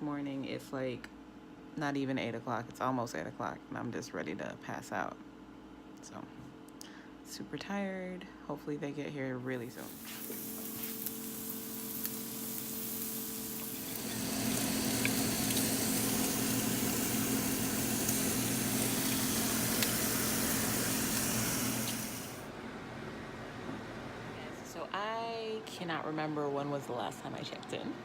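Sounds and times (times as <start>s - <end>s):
food sizzling on a grill: 9.7s - 22.5s.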